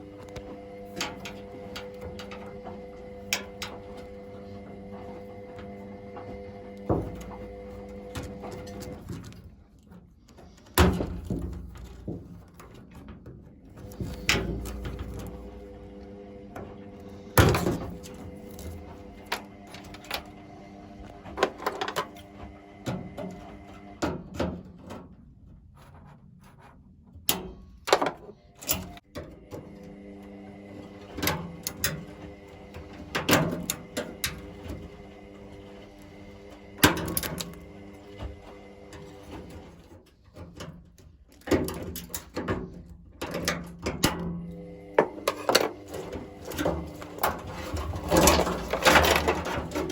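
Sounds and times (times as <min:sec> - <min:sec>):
steady low hum: 0:00.0 - 0:12.9
knocks and rattles on machine: 0:45.0 - 0:49.9.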